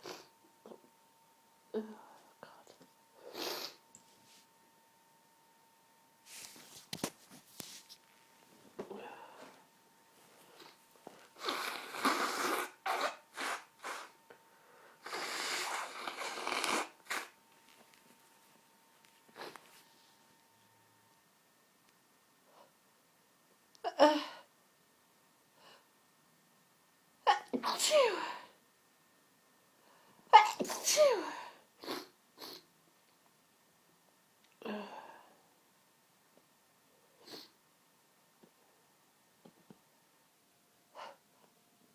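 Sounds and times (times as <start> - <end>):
person sneezing: 27.3 - 28.5, 30.4 - 32.7.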